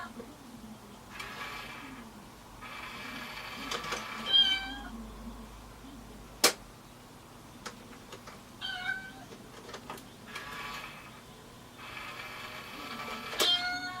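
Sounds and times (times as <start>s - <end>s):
cat meowing: 4.2s - 4.9s, 8.6s - 9.3s, 13.4s - 14.0s.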